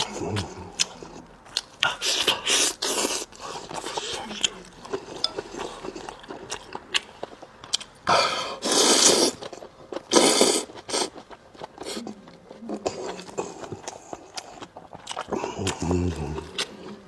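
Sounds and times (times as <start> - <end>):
soft chewing clicks: 0.0 - 8.1
loud noodle slurps: 8.6 - 9.4.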